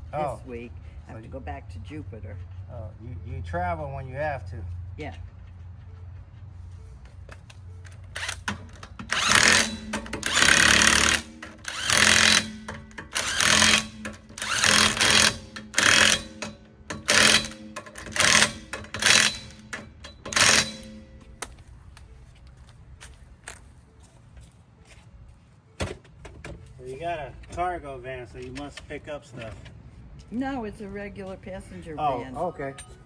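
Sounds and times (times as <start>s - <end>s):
impact wrench bursts: 7.9s - 21.3s.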